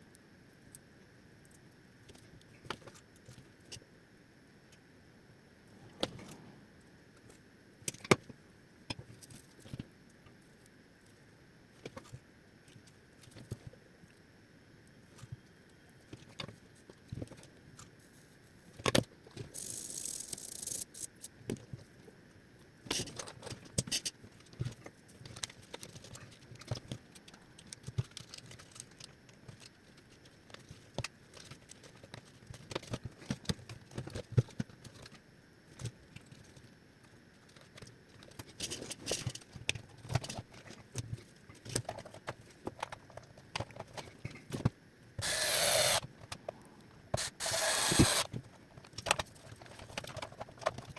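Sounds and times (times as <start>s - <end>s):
plastic parts and tools clicking: 41.6s - 46.5s, 47.1s - 50.9s
short hiss: 45.2s - 46.0s, 47.2s - 48.3s.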